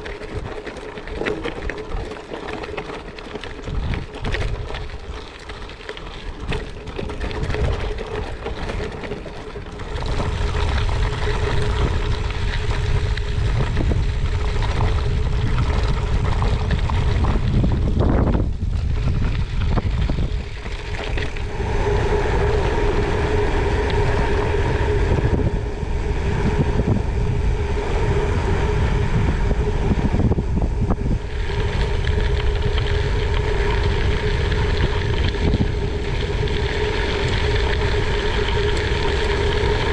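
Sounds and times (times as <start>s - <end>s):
wind buffeting microphone: 0.0s - 39.9s
steady hum: 9.8s - 39.9s.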